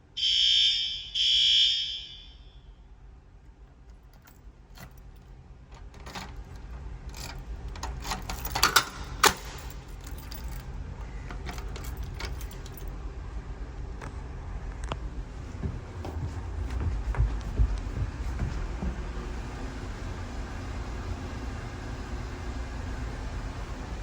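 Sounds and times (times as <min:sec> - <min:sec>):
low hum: 0:00.0 - 0:05.3
keys jangling: 0:03.8 - 0:13.0.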